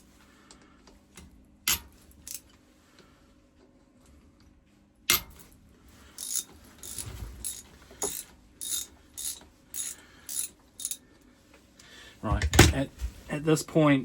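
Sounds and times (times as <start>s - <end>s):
ratchet wrench ratcheting: 6.2s - 11.0s.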